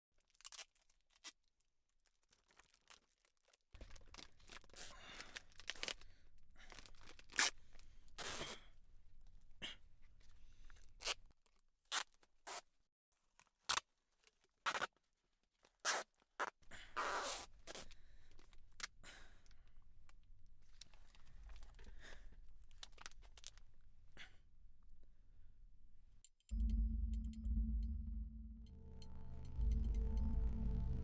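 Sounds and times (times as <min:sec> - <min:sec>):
low steady hum: 0:26.5 - 0:31.0.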